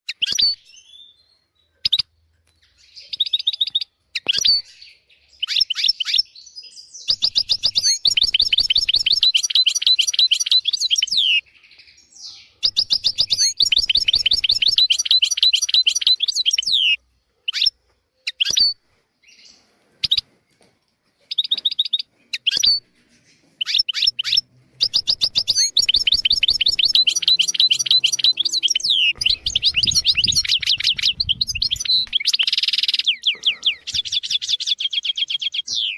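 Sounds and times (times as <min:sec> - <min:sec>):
finch twittering and trilling: 0:06.9 - 0:11.4, 0:12.1 - 0:17.7, 0:23.6 - 0:35.9.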